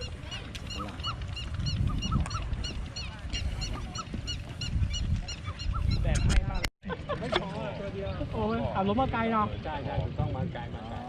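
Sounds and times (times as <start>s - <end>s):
birds chirping: 0.0s - 6.7s
lower bird calls: 0.0s - 6.7s.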